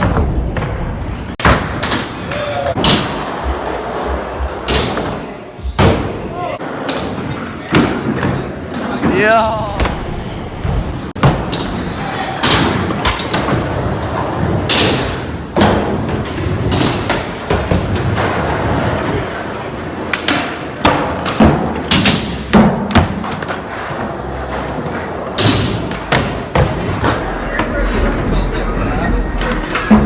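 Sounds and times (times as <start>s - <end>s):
skateboards landing with thuds: 0.0s - 10.0s, 10.7s - 19.1s, 20.0s - 24.6s, 25.3s - 27.7s
skateboards rolling: 0.0s - 30.0s.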